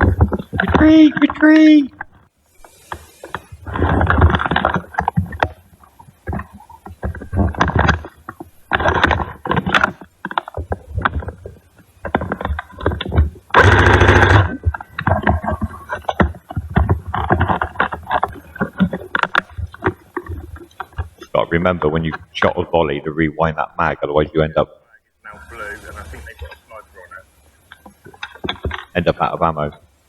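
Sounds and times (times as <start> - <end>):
rapid clattering clicks: 2.1 - 21.4.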